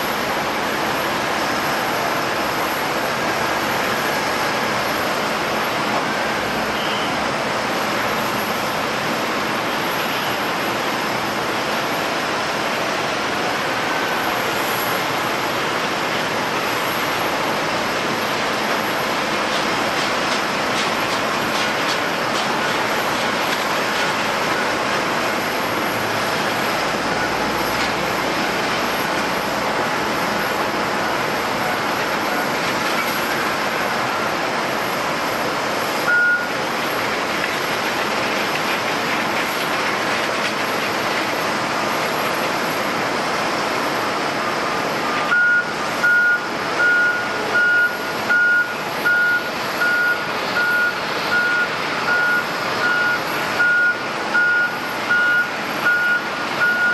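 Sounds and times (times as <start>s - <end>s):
jet engines running: 0.0s - 56.7s
reversing alarm beeping: 6.1s - 7.2s, 26.3s - 27.8s, 36.0s - 36.6s, 45.0s - 56.9s.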